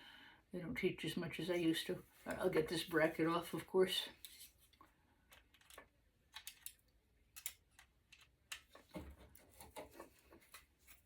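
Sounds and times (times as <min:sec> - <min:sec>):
small clicks handling circuit board: 0:05.3 - 0:08.7.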